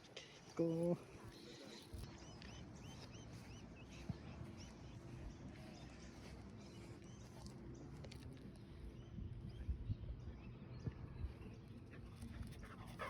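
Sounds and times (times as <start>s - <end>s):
faint bird chirping: 0.0s - 7.6s.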